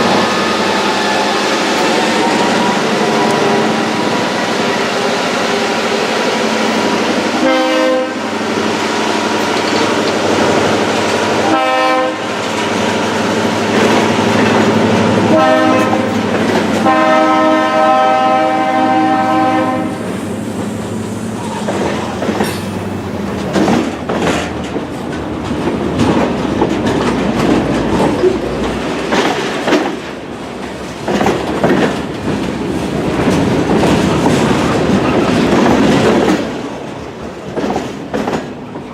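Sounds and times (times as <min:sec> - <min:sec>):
train rolling past: 0:00.0 - 0:38.9
locomotive horn blasts: 0:00.3 - 0:04.1, 0:07.4 - 0:08.3, 0:11.4 - 0:12.4, 0:15.2 - 0:20.1
wheels clicking over rail joints: 0:21.4 - 0:38.9.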